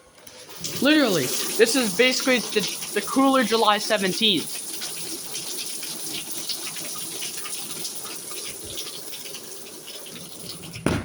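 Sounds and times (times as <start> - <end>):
heavy rain pouring: 0.5 - 5.6.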